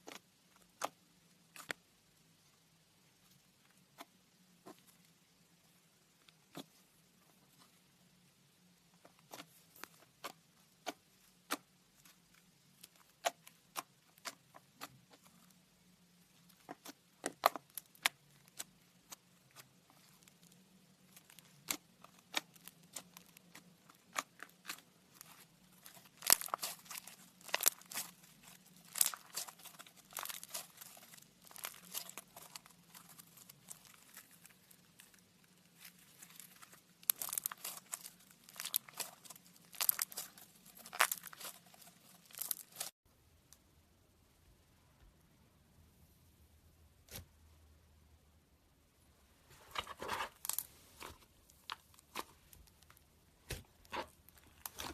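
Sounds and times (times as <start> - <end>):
slime crackling and popping: 16.5 - 42.9.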